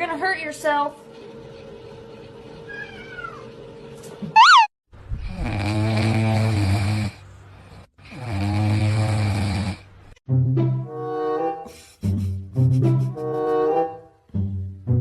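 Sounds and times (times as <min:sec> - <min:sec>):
cat meowing: 0:02.7 - 0:03.5.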